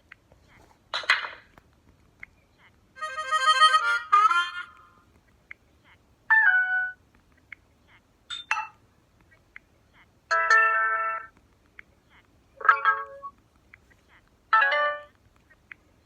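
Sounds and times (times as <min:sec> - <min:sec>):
phone notification chime: 0:12.6 - 0:13.3.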